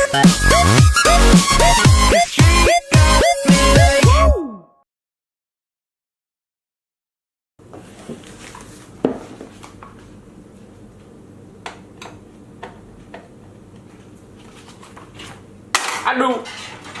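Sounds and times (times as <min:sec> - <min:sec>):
room hum: 0:07.6 - 0:17.0.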